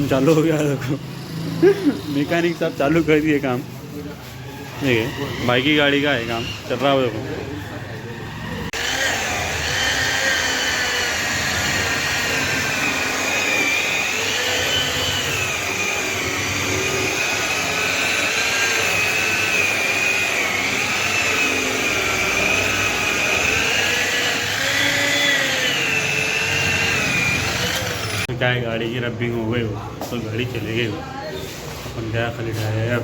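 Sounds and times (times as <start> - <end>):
electric polisher motor whine: 6.7 - 28.3.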